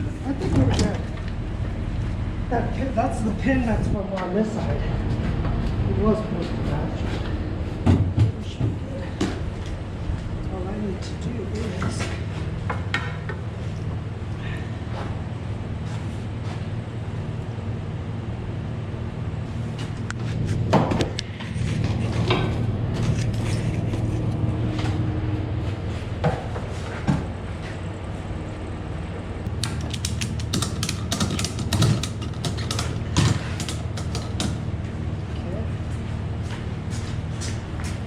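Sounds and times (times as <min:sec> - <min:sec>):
metallic clicks and clunks: 0:29.6 - 0:34.6.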